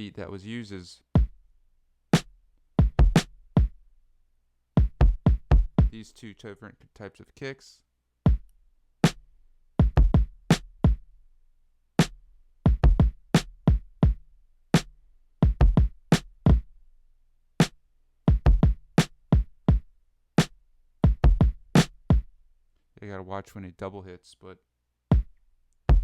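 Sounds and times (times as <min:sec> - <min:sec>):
drum machine beat: 0:01.1 - 0:01.3, 0:02.2 - 0:03.8, 0:04.8 - 0:06.0, 0:08.3 - 0:08.5, 0:09.8 - 0:11.0, 0:12.7 - 0:14.2, 0:14.8 - 0:16.7, 0:18.3 - 0:19.8, 0:20.4 - 0:22.3, 0:25.1 - 0:25.3.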